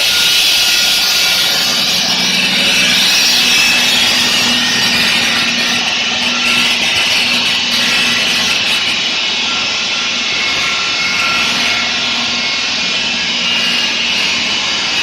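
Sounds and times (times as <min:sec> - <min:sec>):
saw blade cutting stone: 0:00.0 - 0:15.0
motor low hum: 0:01.4 - 0:09.4.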